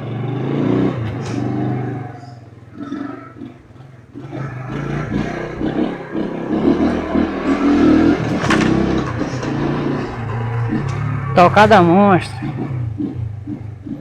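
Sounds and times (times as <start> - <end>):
scooter engine revving: 0.0 - 14.0.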